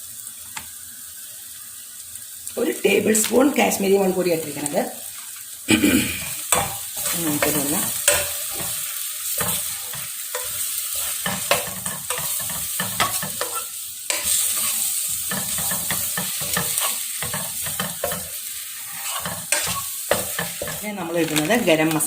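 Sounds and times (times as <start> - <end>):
onion masala sizzling in a pan: 0.0 - 22.0
spoon scraping and clinking on pan: 6.4 - 21.7.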